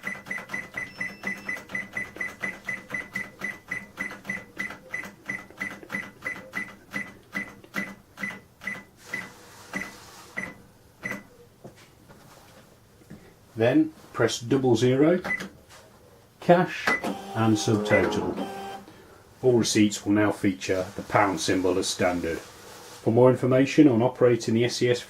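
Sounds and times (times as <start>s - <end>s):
cash register keypad beeping: 0.0s - 11.2s, 17.0s - 18.8s.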